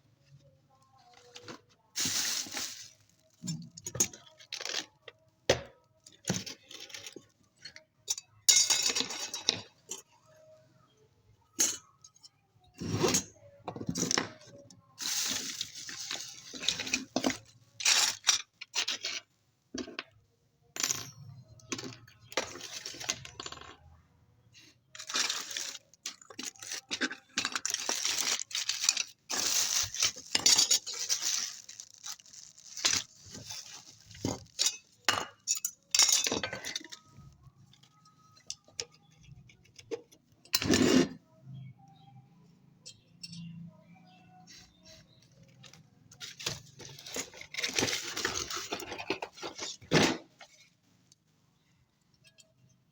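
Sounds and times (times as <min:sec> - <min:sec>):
metal parts and tools clinking: 0:06.0 - 0:10.2, 0:11.5 - 0:20.1, 0:20.7 - 0:23.8, 0:24.9 - 0:41.6, 0:42.8 - 0:50.7.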